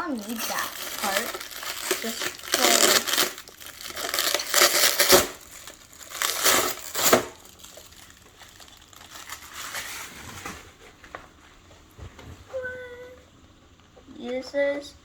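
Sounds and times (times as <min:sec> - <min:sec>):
plastic wrap crinkling: 0:00.0 - 0:10.8.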